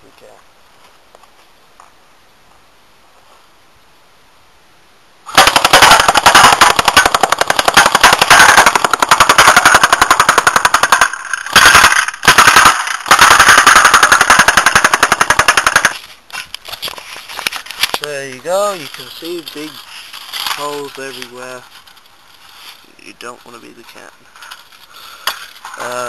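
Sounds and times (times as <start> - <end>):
bb gun automatic bursts: 5.3 - 16.1.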